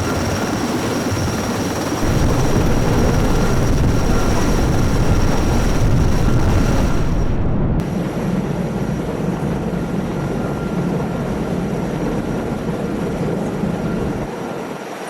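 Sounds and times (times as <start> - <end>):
helicopter turbine and rotor: 0.0 - 15.0
wind buffeting microphone: 2.0 - 7.9
high whine: 2.0 - 8.0.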